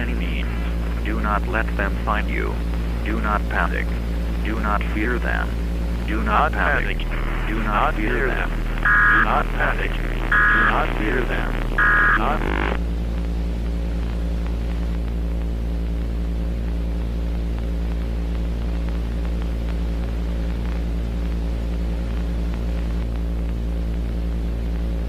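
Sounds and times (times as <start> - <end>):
faint static hiss: 0.0 - 25.0
low electrical hum: 0.0 - 25.0.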